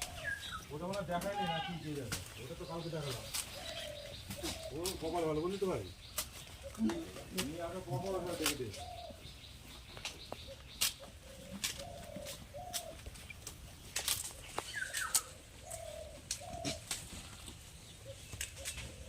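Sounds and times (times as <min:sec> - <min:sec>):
dove cooing: 0:00.0 - 0:00.7, 0:03.0 - 0:05.0, 0:06.6 - 0:09.3, 0:10.3 - 0:13.2, 0:14.6 - 0:19.0.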